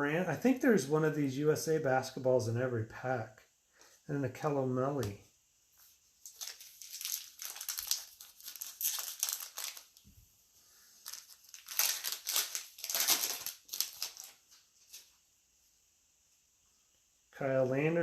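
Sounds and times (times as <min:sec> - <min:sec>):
wrapper crinkling: 0:06.2 - 0:10.2, 0:11.0 - 0:15.2.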